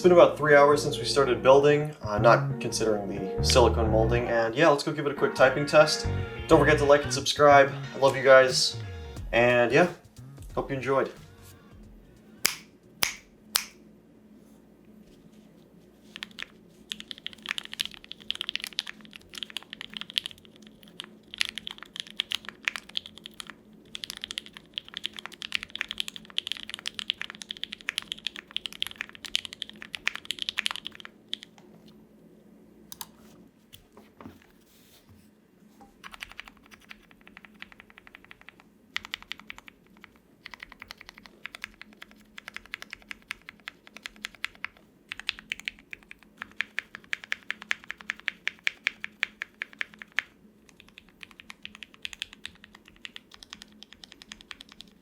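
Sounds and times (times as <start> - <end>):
fast mechanical keyboard typing: 16.1 - 31.6, 36.0 - 55.0.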